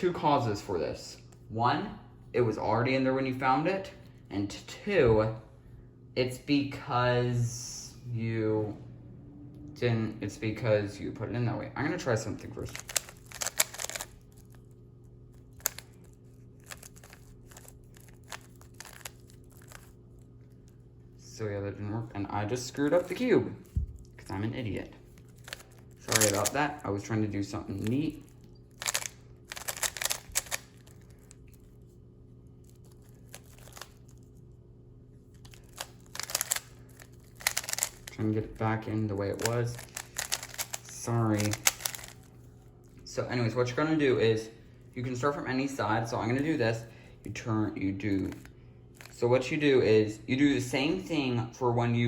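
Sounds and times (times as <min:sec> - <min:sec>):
steady low hum: 0:00.0 - 0:52.0
puzzle cube clicking turns: 0:12.6 - 0:14.2, 0:25.4 - 0:26.6, 0:28.8 - 0:30.9, 0:35.5 - 0:38.1, 0:39.3 - 0:42.2.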